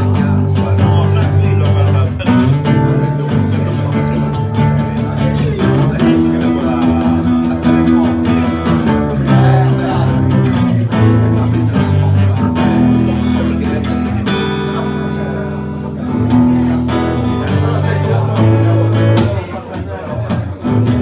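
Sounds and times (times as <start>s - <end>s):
sustained bass notes: 0.0s - 19.6s, 20.2s - 21.0s
strummed guitar: 0.0s - 21.0s.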